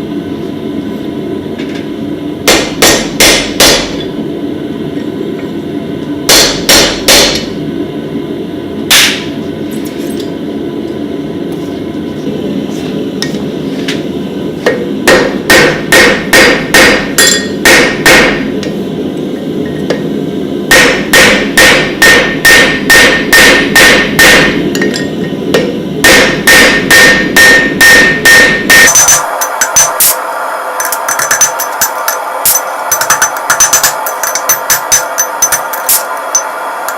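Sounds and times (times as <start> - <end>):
hammer striking steel on anvil: 2.4 - 4.2, 6.3 - 7.6, 8.9 - 9.4, 14.6 - 18.8, 20.7 - 36.9
anvil ringing: 15.1 - 18.4, 20.7 - 30.2, 30.8 - 36.6.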